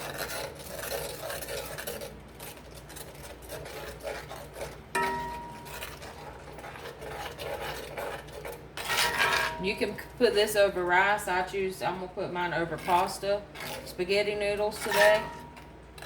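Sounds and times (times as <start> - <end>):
utensil scraping pan of sauce: 0.0 - 16.0
metallic clink against pan: 5.0 - 5.8.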